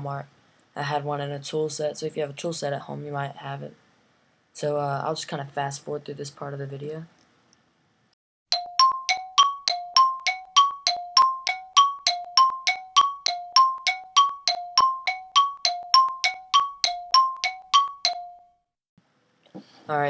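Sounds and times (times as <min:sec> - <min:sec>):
two-note bell chime: 0:08.5 - 0:18.6.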